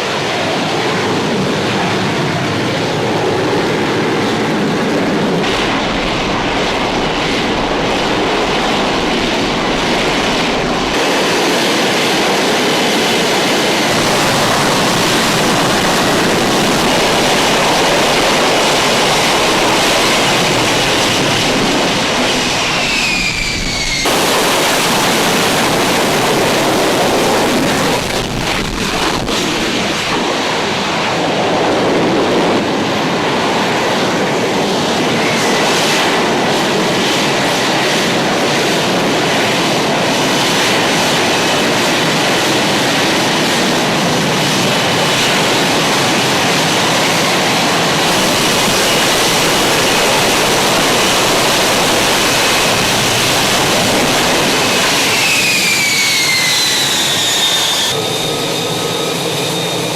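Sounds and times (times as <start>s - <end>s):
jet engine roar: 0.0s - 59.9s
jet whine falling in pitch: 4.4s - 30.8s, 47.2s - 59.9s.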